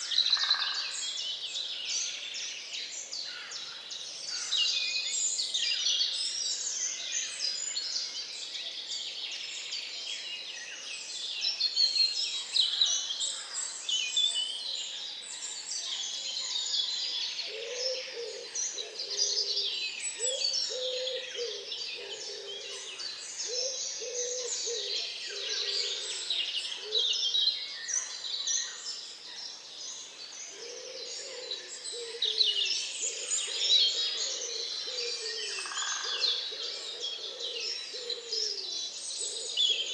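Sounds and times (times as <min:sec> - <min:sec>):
birds singing: 0:11.6 - 0:39.9.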